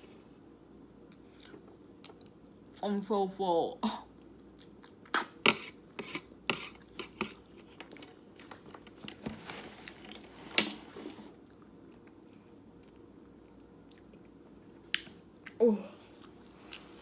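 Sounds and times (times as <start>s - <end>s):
person chewing noodles: 4.2s - 9.0s, 11.4s - 17.0s.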